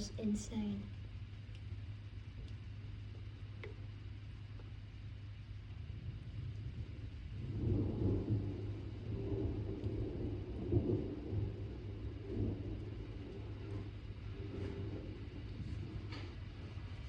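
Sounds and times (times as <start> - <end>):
low background rumble: 0.0 - 17.0
thunder rumbling: 5.5 - 17.0.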